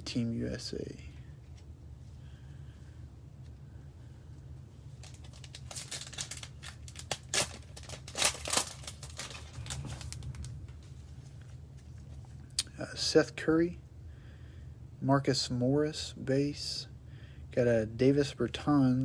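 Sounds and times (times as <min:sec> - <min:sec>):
plastic wrapper crinkling and tearing: 0:05.0 - 0:10.6.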